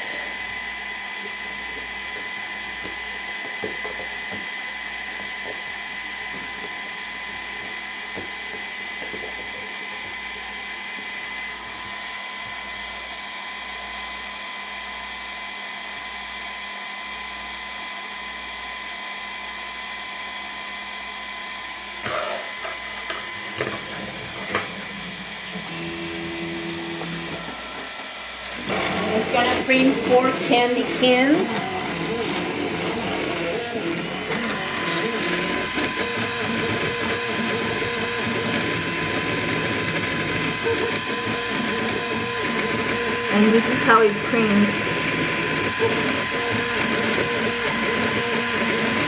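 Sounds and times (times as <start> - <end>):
high whine: 21.6 - 49.0
three d printer whirring: 22.1 - 49.0.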